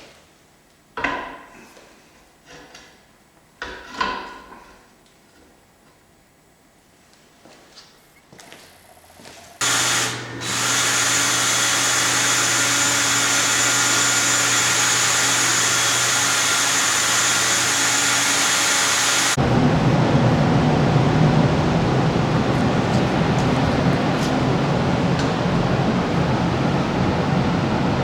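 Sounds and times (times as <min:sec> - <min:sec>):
power tool motor running: 0:08.9 - 0:19.4.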